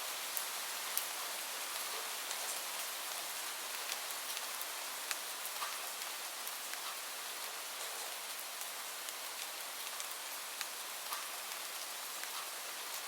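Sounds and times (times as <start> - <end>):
steady rain hiss: 0.0 - 13.0
sharp raindrop ticks: 5.0 - 7.0, 9.8 - 11.4, 12.2 - 12.6.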